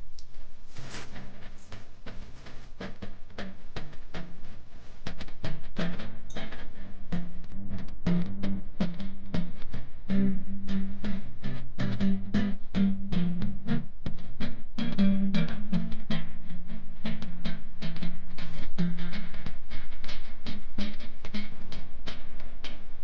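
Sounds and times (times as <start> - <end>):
plucked guitar: 1.1 - 23.0.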